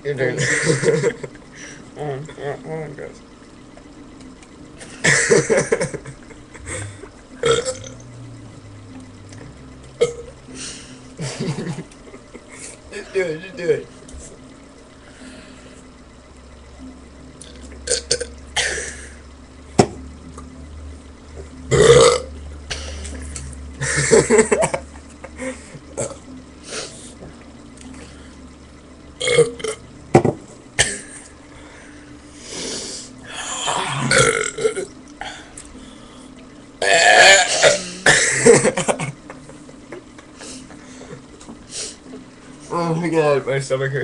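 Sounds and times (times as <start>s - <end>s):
loud burps: 6.7s - 8.0s, 10.0s - 10.3s, 17.8s - 19.0s, 21.7s - 22.3s, 29.2s - 29.8s, 33.6s - 34.9s, 36.8s - 38.5s.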